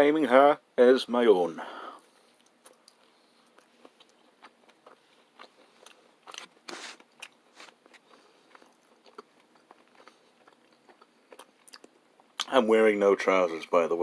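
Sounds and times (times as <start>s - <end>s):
chewing food with mouth noises: 2.2s - 12.6s.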